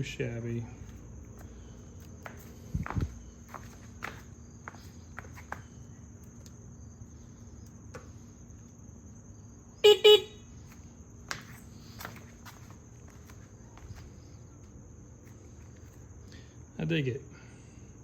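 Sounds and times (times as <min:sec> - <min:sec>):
horn toots: 0:09.8 - 0:10.5.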